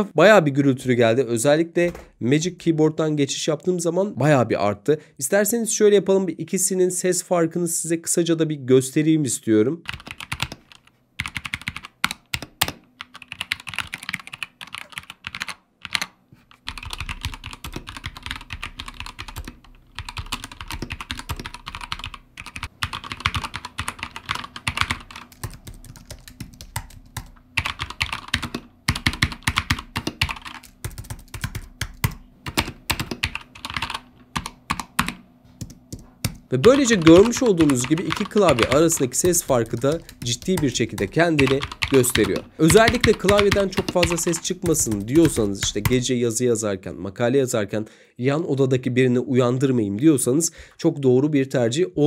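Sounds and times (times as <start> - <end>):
typing on keyboard: 9.9 - 46.0.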